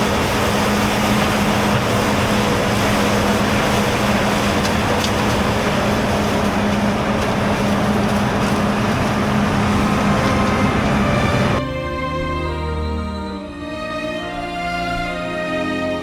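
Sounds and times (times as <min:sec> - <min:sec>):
heavy machinery running: 0:00.0 - 0:16.0.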